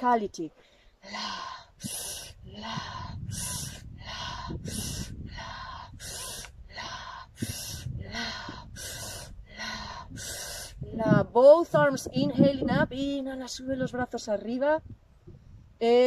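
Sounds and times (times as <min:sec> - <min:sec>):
rapid forceful breathing: 0:00.6 - 0:11.0.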